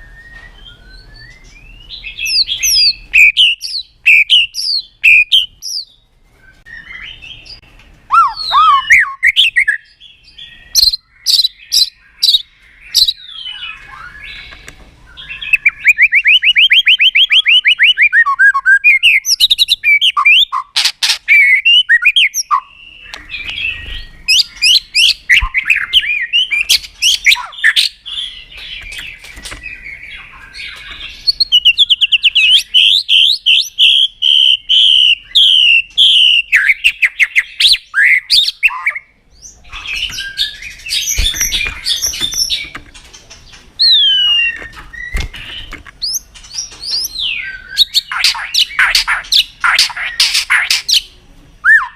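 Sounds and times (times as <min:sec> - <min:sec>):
bird singing varied song: 0:00.0 - 0:51.9
harsh bird chattering: 0:02.2 - 0:05.9, 0:08.1 - 0:09.8, 0:10.6 - 0:14.6, 0:15.2 - 0:23.7, 0:24.3 - 0:29.2, 0:40.8 - 0:51.2.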